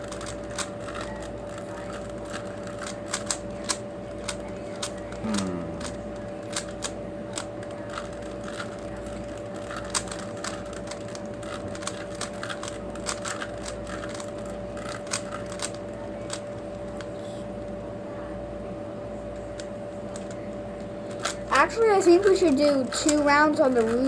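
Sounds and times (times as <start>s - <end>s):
puzzle cube plastic clicks: 0.0s - 17.2s, 22.0s - 24.0s
steady hum: 0.0s - 24.0s.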